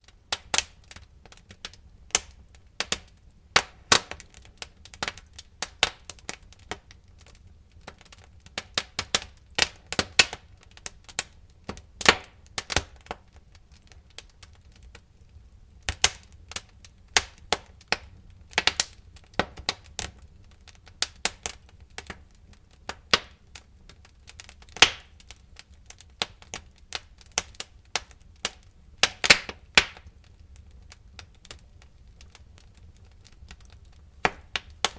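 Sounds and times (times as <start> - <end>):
logs crackling and popping: 0.0 - 34.9
low rumble of fire: 0.0 - 34.9.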